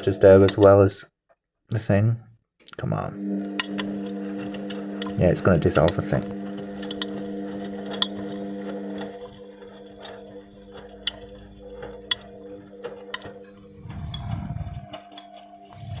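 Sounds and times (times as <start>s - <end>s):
washing machine hum: 3.1s - 16.0s
sharp ticks: 10.0s - 15.9s
low rumble: 13.7s - 14.9s.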